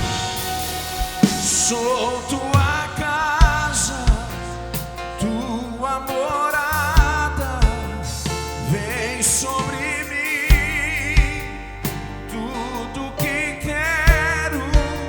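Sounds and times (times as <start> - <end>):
gospel worship band playing: 0.0 - 15.0
kick drum: 10.5 - 11.5, 14.1 - 15.0.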